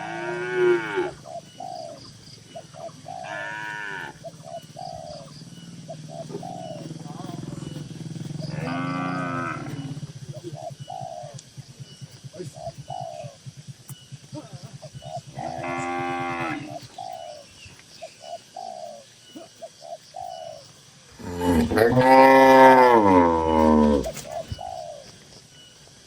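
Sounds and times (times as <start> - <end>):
cattle mooing: 0.0 - 1.2, 3.2 - 4.2, 8.4 - 10.0, 15.4 - 16.8, 21.2 - 24.2
doves cooing: 0.0 - 26.0.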